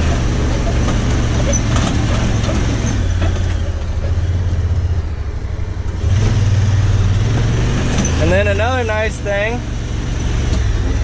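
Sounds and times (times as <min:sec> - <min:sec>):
rattling: 0:00.0 - 0:06.4
engine running with low hum: 0:00.0 - 0:11.0.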